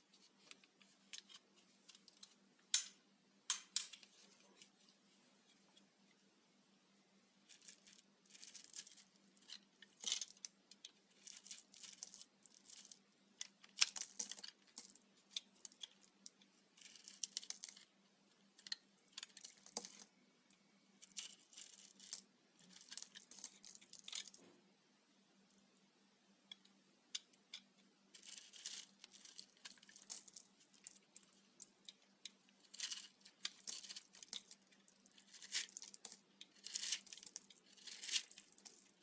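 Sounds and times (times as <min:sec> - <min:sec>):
soap crunching and crackling: 0:28.2 - 0:39.0.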